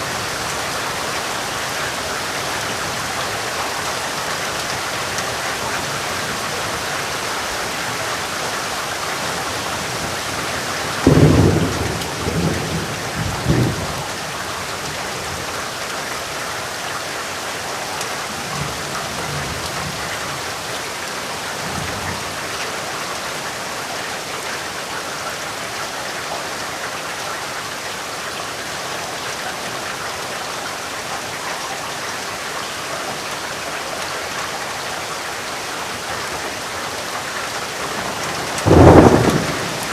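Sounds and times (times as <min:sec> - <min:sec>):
heavy rain falling: 0:00.0 - 0:39.9
distant thunder rumble: 0:11.0 - 0:14.0, 0:37.8 - 0:39.9
loud thunder clap: 0:38.2 - 0:39.9.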